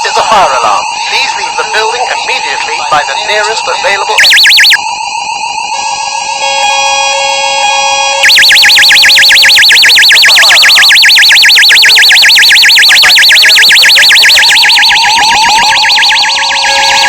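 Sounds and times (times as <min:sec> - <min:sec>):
fire alarm warble: 0:00.0 - 0:17.0
lower alarm tone: 0:00.0 - 0:17.0.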